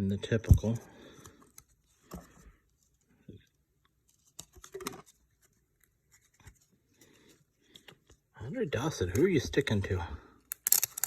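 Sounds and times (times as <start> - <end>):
trading cards rustling and peeling: 4.0 - 8.2, 10.5 - 11.0.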